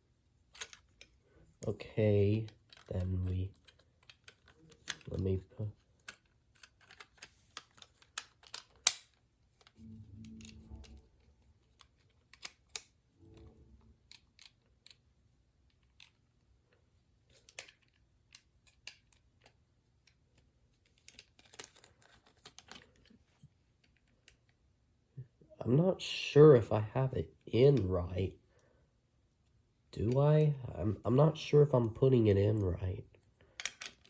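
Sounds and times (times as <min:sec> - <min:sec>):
plastic toy parts clicking: 0:00.5 - 0:01.2, 0:02.4 - 0:11.0, 0:11.6 - 0:13.0, 0:14.0 - 0:16.3, 0:17.3 - 0:23.2, 0:33.5 - 0:34.0.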